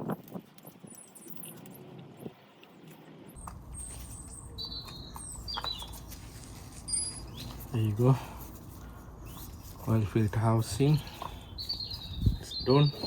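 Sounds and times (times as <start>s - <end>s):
small birds chirping: 2.8s - 13.0s.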